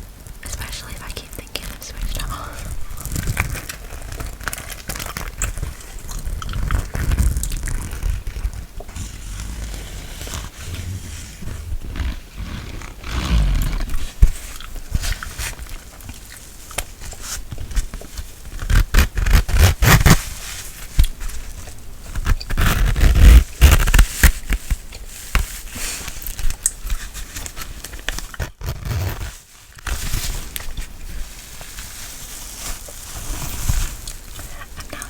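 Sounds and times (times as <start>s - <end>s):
microphone brushing and rubbing: 6.9s - 15.6s.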